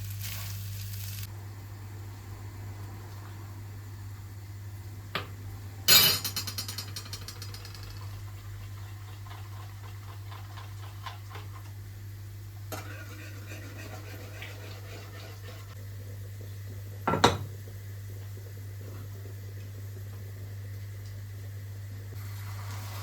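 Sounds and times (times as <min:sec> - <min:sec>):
steady low hum: 0:01.3 - 0:09.6, 0:11.6 - 0:22.2
kitchenware clanking and rattling: 0:05.9 - 0:08.2.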